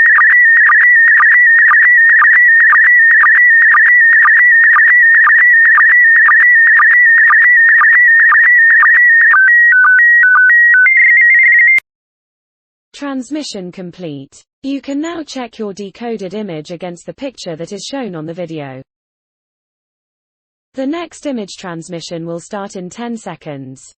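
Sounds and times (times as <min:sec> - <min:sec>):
warbling whistle signal: 0:00.0 - 0:11.8.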